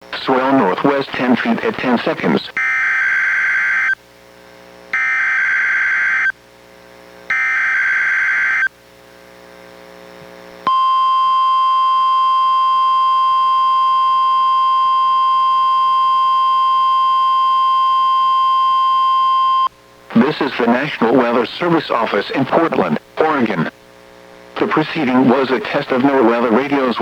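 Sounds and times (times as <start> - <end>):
steady warning alarm tone: 2.6 - 4.0, 5.0 - 6.3, 7.3 - 8.7, 10.7 - 19.7.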